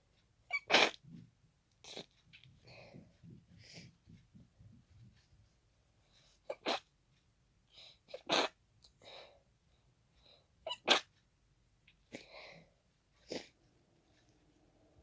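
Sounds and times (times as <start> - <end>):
quick breaths: 2.6 - 4.1.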